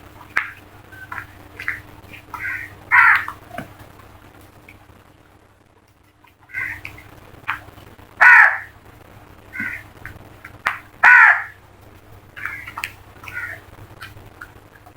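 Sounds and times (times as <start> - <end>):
crows cawing: 0.3 - 3.4, 6.5 - 7.6, 8.2 - 8.8, 9.5 - 10.0, 10.6 - 11.6, 12.4 - 13.7.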